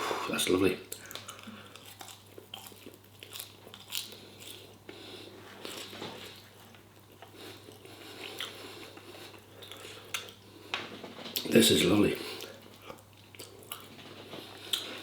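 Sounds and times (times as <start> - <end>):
man chewing food: 0.9 - 11.5, 12.2 - 15.0.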